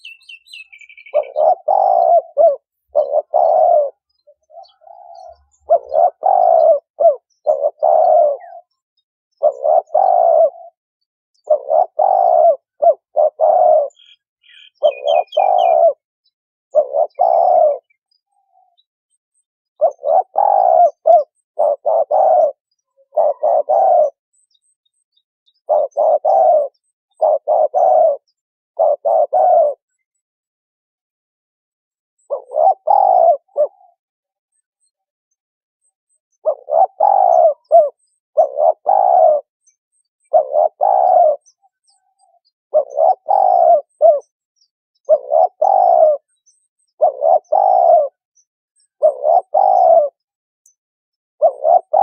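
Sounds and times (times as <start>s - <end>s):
dove cooing: 0.0s - 10.8s, 11.4s - 16.1s, 16.7s - 18.9s, 19.8s - 24.2s, 25.5s - 30.1s, 32.2s - 34.0s, 36.3s - 39.6s, 40.2s - 44.4s, 45.0s - 48.2s, 48.8s - 50.3s, 51.4s - 52.0s
small bird chirping: 0.0s - 30.5s, 31.7s - 52.0s.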